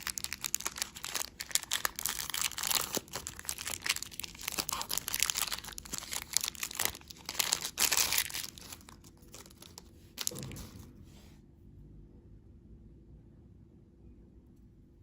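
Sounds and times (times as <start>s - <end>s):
candy wrapper crinkling and tearing: 0.0s - 10.8s.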